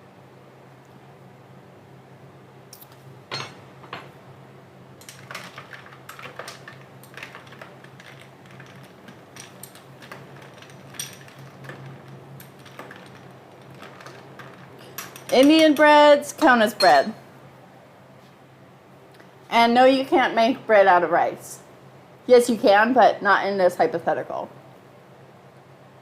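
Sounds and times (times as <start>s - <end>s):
kitchen items clinking: 3.3s - 4.1s, 5.0s - 17.2s.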